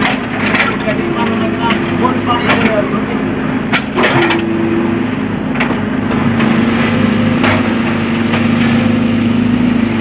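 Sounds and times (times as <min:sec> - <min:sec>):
heavy machine engine running: 0:00.0 - 0:10.0.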